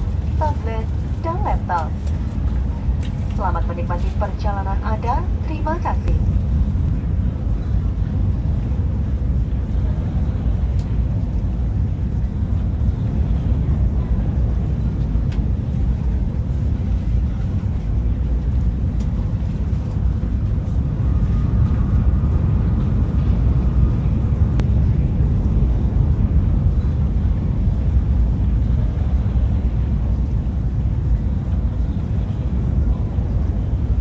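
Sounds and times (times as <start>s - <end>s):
electric train low rumble: 0.0s - 34.0s.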